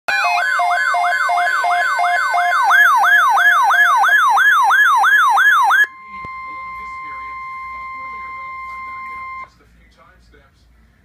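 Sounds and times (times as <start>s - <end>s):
two-note hi-lo siren wail: 0.1s - 9.4s
electronic siren yelp: 0.1s - 9.5s.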